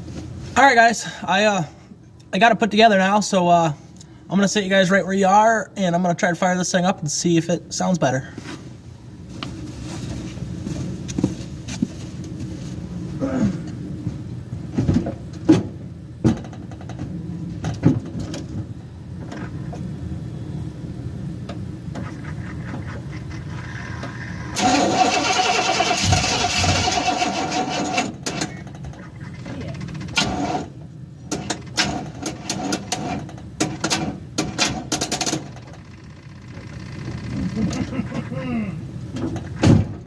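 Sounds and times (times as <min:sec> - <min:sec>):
starter cranking engine: 0:22.0 - 0:28.7, 0:29.8 - 0:30.7, 0:35.8 - 0:37.8
rapid starter clicks: 0:24.5 - 0:28.5, 0:29.8 - 0:30.7.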